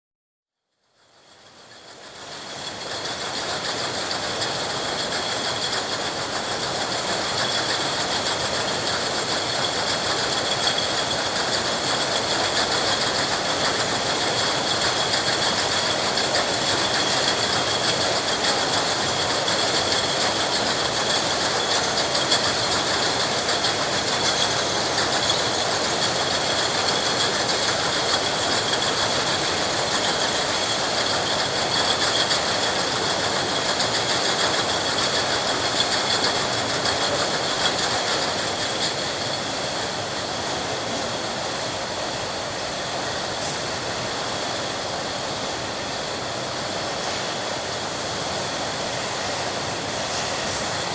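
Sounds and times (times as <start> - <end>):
high steady machine whine: 1.1 - 50.9
mechanical clatter of machinery: 1.7 - 39.8.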